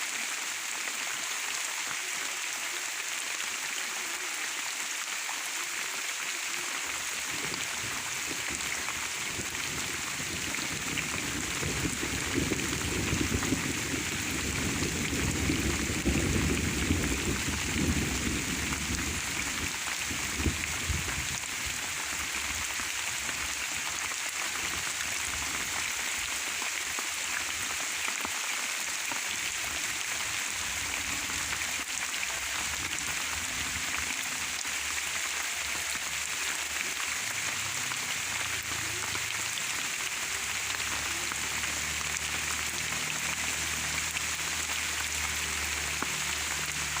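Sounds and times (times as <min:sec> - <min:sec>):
steady rain falling: 0:00.0 - 0:47.0.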